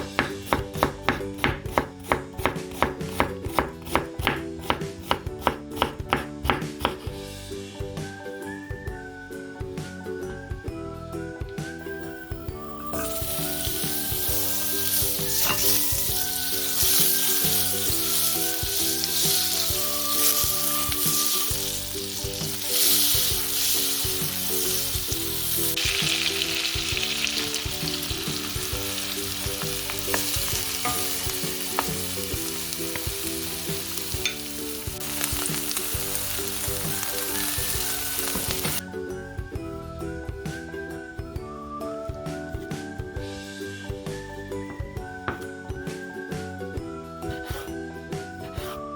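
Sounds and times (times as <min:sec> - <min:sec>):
light background music: 0:00.0 - 0:48.9
food sizzling in a pan: 0:13.0 - 0:38.8.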